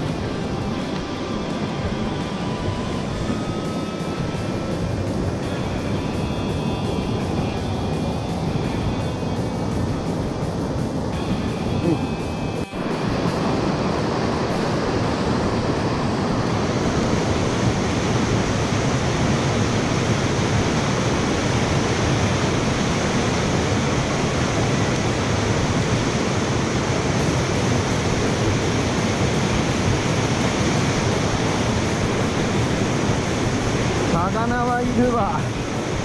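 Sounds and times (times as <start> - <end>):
stream water rushing: 0.0 - 36.0.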